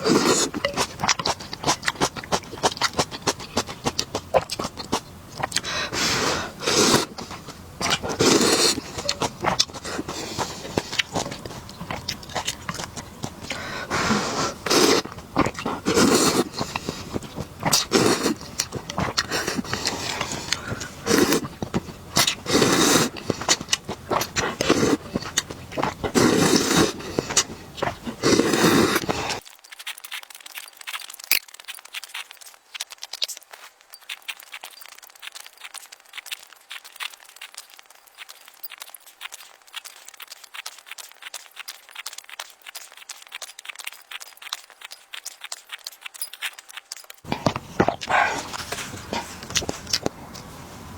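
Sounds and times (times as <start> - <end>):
noodle slurping: 0.0 - 29.4, 47.2 - 50.9
chewing with small clicks: 0.0 - 50.6.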